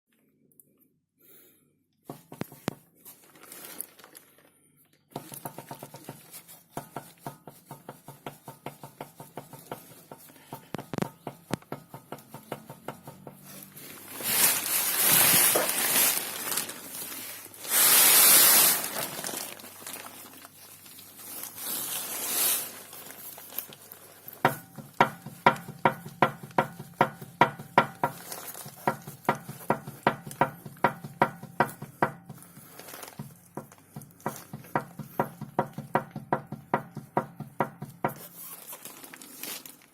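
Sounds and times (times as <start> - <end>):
drive shafts knocking: 7.5 - 13.5.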